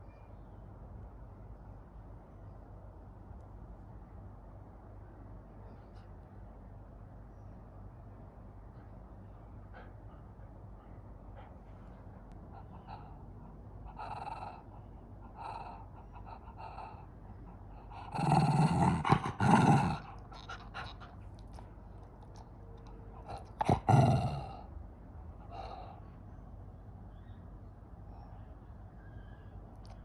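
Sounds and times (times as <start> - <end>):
dog vocalising: 12.4 - 21.6, 22.2 - 24.7, 25.4 - 26.0.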